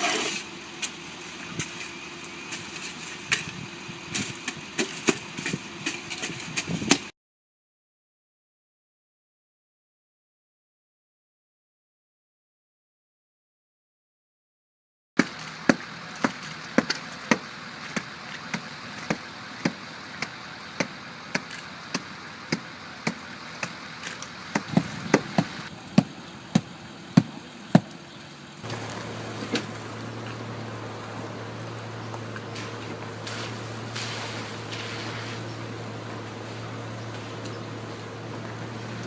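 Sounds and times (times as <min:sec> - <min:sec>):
low engine hum: 0:00.0 - 0:07.1, 0:15.2 - 0:39.0.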